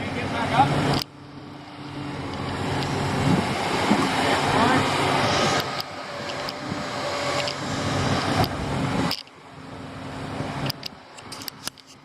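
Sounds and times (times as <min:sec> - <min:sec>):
construction machinery engine running: 0:00.0 - 0:11.8.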